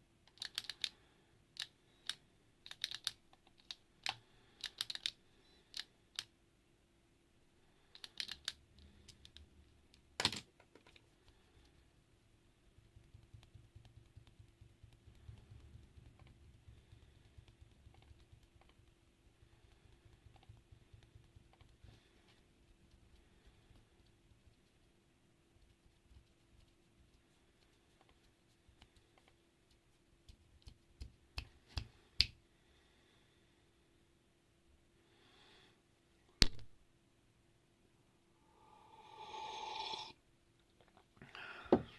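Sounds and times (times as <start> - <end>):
mechanical keyboard keys clacking: 0.3 - 0.9, 2.7 - 5.1, 8.0 - 8.6.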